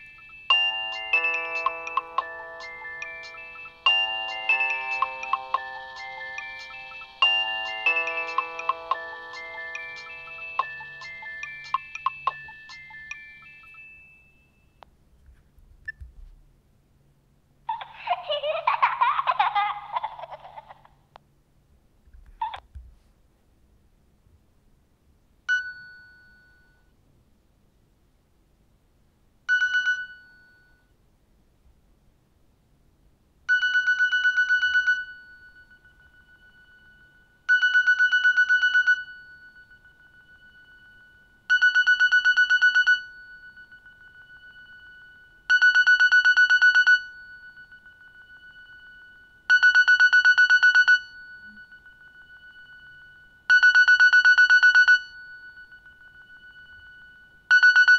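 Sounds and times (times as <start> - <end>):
electronic alarm beeping: 0.1 - 13.8.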